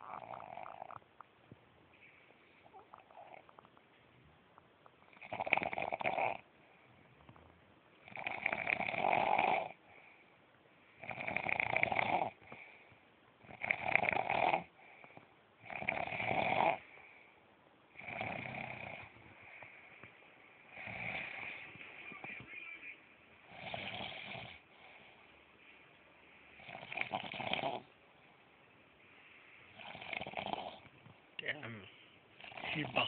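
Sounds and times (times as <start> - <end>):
person snoring: 0.0 - 1.0, 8.1 - 9.8, 20.7 - 22.2, 26.6 - 27.9
faint breath: 1.9 - 2.9, 9.8 - 11.0, 12.4 - 13.2, 16.8 - 17.5, 19.0 - 22.2, 24.6 - 26.7, 29.0 - 29.8.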